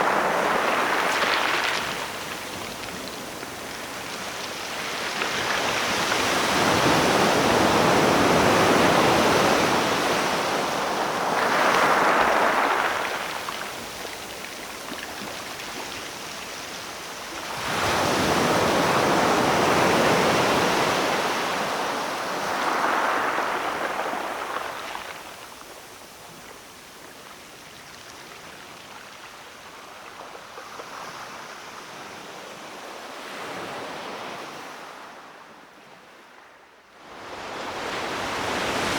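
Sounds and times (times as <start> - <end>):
sea waves breaking: 0.0 - 25.4.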